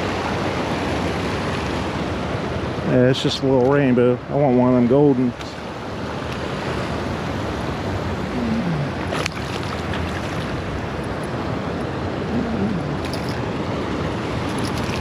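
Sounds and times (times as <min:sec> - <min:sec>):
small waterfall rushing: 0:00.0 - 0:03.4.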